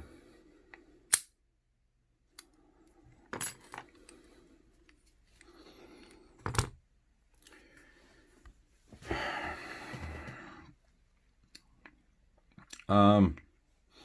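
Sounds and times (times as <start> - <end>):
metallic clicks of padlock picking: 1.1 - 1.3.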